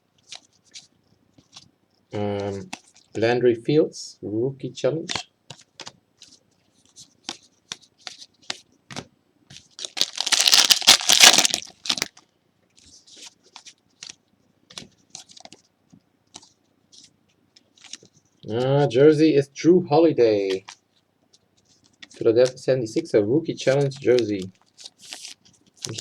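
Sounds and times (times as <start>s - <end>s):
card pack wrapper tearing: 9.8s - 12.2s, 23.8s - 26.0s.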